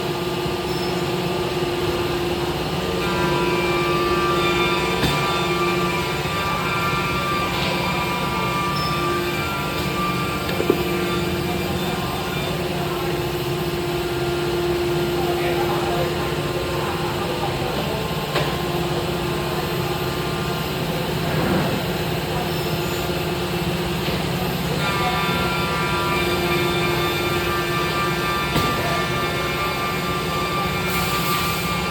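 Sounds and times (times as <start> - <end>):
machine drone with whining tone: 0.0 - 31.9
higher whining tones: 2.2 - 15.3.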